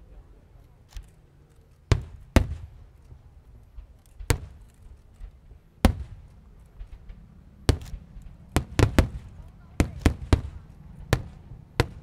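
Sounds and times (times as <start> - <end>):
small fireworks cracks: 0.5 - 12.0
fireworks shells bursting: 7.7 - 12.0.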